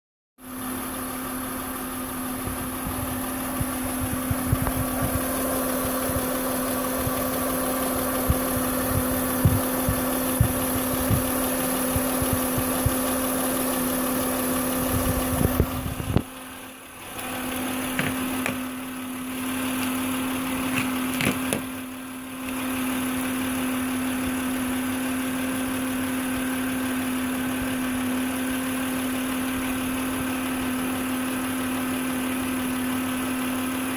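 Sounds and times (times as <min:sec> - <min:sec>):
car engine idling: 0:00.4 - 0:33.9
alternator whine: 0:00.5 - 0:33.5
low thumps: 0:02.4 - 0:06.3, 0:08.2 - 0:13.0.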